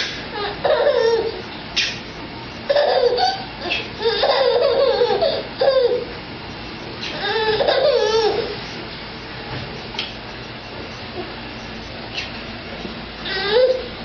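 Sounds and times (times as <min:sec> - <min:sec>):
baby laughing: 0:00.4 - 0:01.4, 0:02.7 - 0:06.1, 0:07.1 - 0:08.6.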